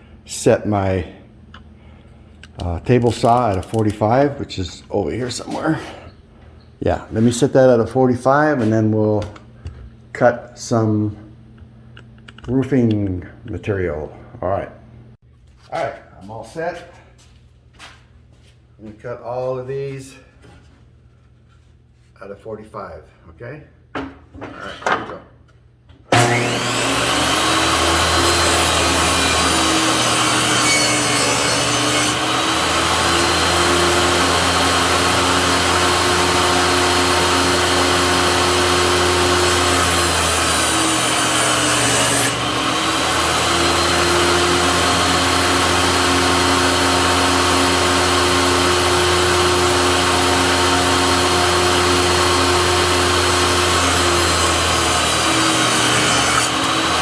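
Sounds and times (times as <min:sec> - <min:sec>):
table saw cutting wood: 0:02.6 - 0:04.6, 0:26.1 - 0:57.0.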